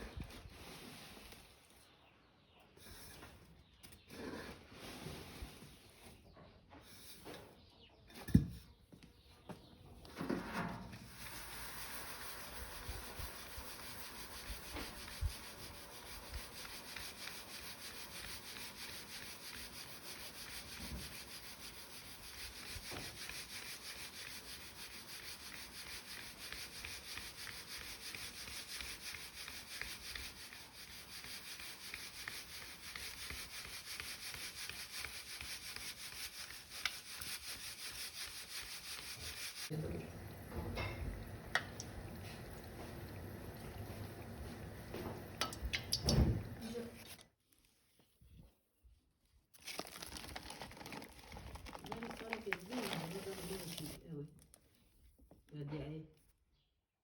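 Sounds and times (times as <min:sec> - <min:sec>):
dried pepper rubbed by hand: 0:11.0 - 0:39.8, 0:49.6 - 0:54.0.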